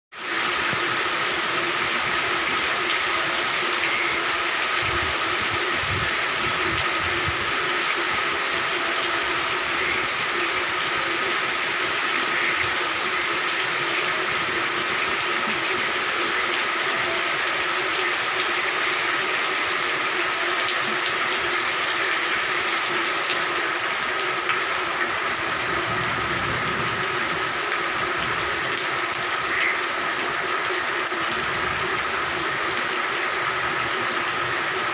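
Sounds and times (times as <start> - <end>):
steady rain falling: 0.1 - 34.9
frogs calling in chorus: 3.3 - 4.4, 9.5 - 14.4, 29.3 - 30.2.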